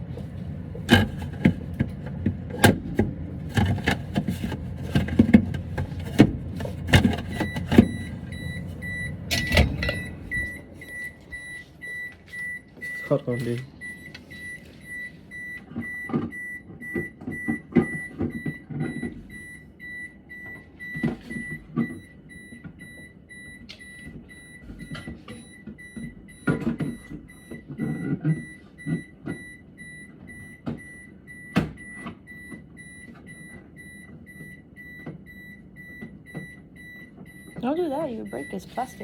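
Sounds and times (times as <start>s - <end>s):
handling clicks and knocks: 0.8s - 8.4s
refrigerator high beeping tone: 0.8s - 39.0s.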